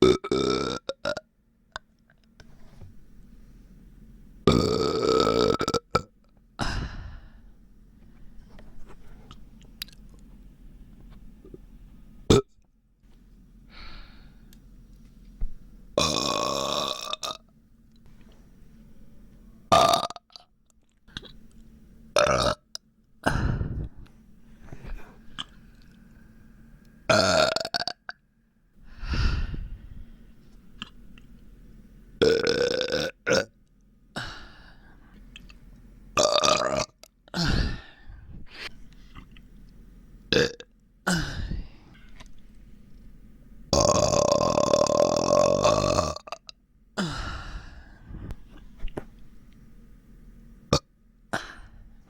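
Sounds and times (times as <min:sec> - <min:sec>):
person burping: 0:00.0 - 0:01.2, 0:04.5 - 0:07.0, 0:16.0 - 0:17.4, 0:19.7 - 0:20.3, 0:22.2 - 0:22.6, 0:27.1 - 0:28.0, 0:32.2 - 0:33.5, 0:36.2 - 0:37.9, 0:40.3 - 0:41.6, 0:43.7 - 0:47.3.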